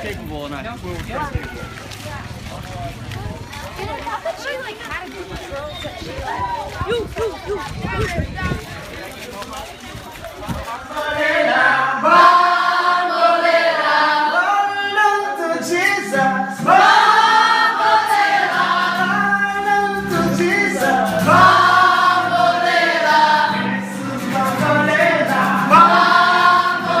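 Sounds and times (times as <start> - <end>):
group of voices singing: 10.8 - 27.0.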